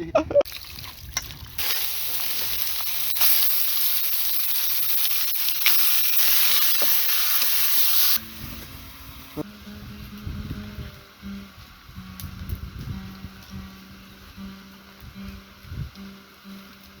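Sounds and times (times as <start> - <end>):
meat sizzling in a pan: 0.5 - 9.4.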